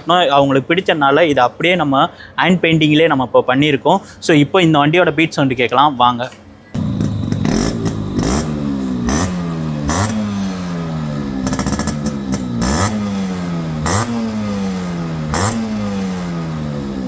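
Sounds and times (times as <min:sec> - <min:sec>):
motorcycle engine revving: 0:06.8 - 0:17.0.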